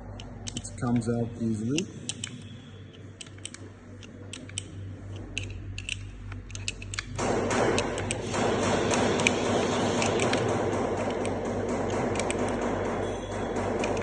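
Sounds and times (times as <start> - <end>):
rifle parts clicking: 0.1 - 1.1, 1.7 - 12.6, 13.8 - 14.0
steady rough noise: 6.9 - 14.0.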